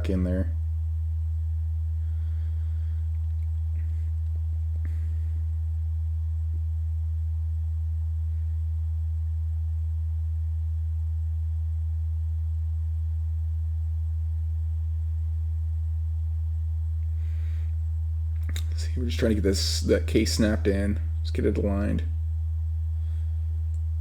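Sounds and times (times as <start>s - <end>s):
low electrical hum: 0.0s - 24.0s
faint clicks: 18.4s - 18.9s.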